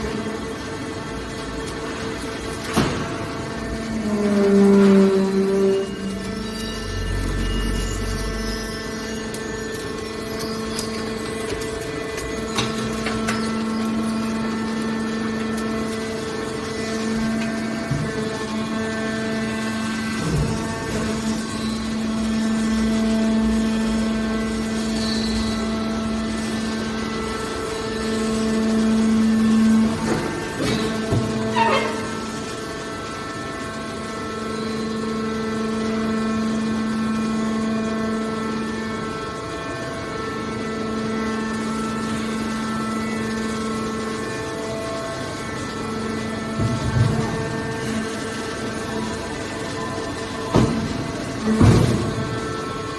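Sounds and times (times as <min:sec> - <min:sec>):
baler pump motor hum: 0:00.0 - 0:52.9.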